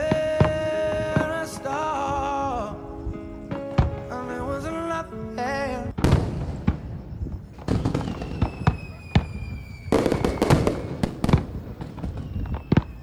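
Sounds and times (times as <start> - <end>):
fireworks bangs and crackles: 0.0 - 2.7, 3.4 - 13.0
fireworks whistles falling in pitch: 6.0 - 13.0.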